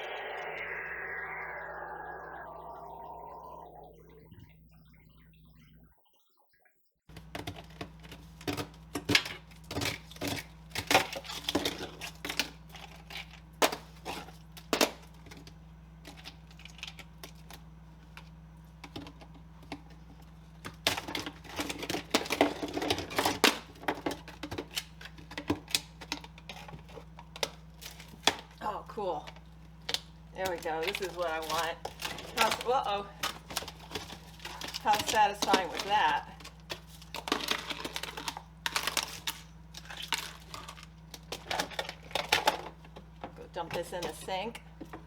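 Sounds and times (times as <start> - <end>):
freezer low hum: 28.6 - 43.7.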